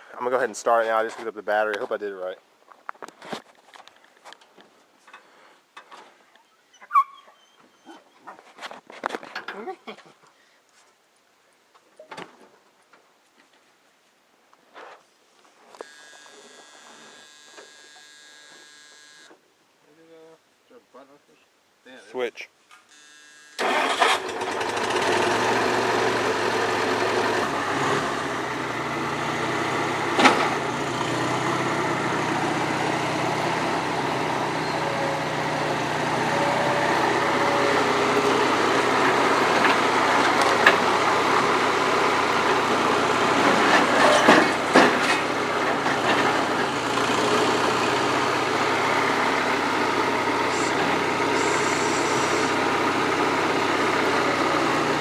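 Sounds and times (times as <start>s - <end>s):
engine running: 23.6s - 55.0s.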